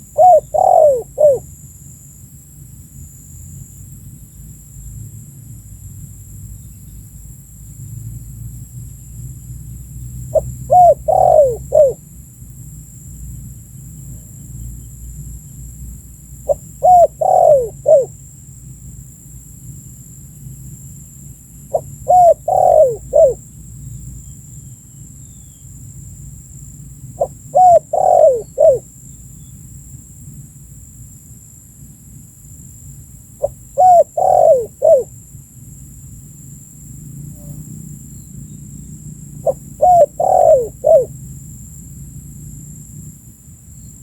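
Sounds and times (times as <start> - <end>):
dove cooing: 0.0 - 1.5, 10.3 - 12.0, 16.5 - 18.2, 21.7 - 23.4, 27.2 - 28.8, 33.4 - 35.1, 39.4 - 41.2.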